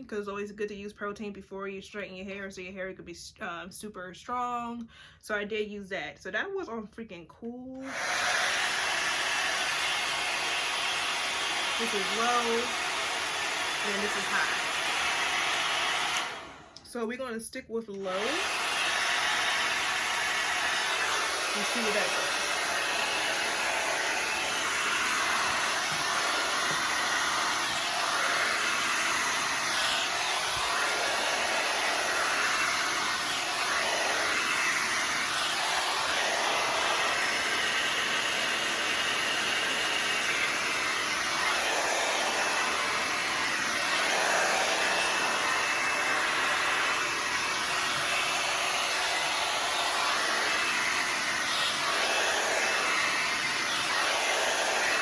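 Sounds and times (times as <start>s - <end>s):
blow dryer running: 7.8s - 55.0s.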